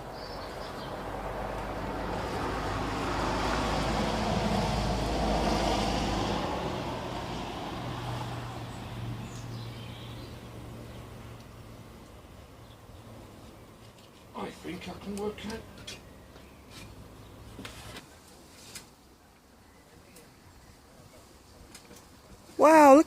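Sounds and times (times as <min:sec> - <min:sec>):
vehicle passing by: 0:00.0 - 0:13.4.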